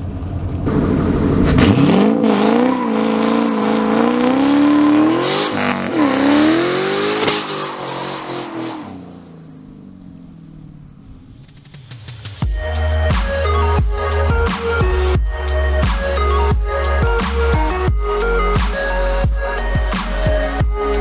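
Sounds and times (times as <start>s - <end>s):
car engine revving hard: 0.6s - 9.0s.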